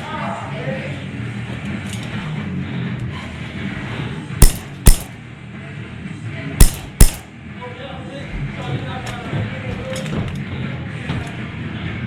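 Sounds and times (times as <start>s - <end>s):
airsoft gun shots: 4.4s - 5.1s, 6.6s - 7.2s.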